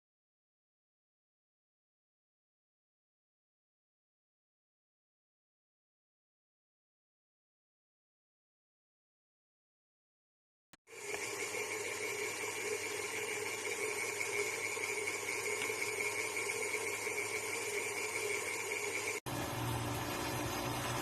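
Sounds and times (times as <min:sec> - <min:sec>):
angle grinder motor whine: 0:10.9 - 0:21.0.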